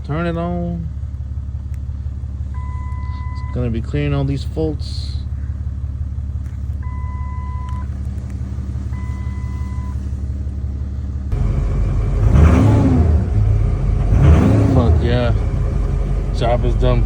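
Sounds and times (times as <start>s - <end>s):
vehicle engine revving: 0.0s - 17.0s
long electronic beeps: 2.6s - 3.6s, 6.8s - 7.9s.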